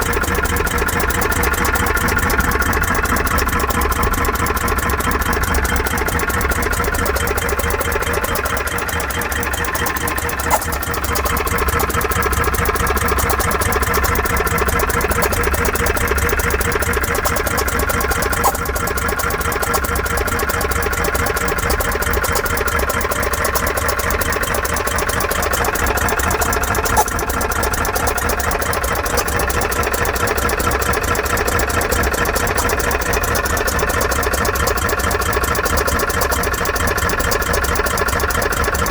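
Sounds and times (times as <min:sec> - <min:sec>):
machine running: 0:00.0 - 0:38.9.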